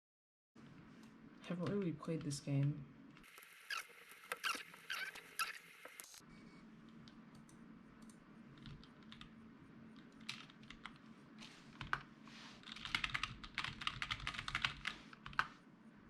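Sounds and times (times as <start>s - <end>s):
typing on computer keyboard: 10.0s - 11.0s, 12.6s - 15.5s.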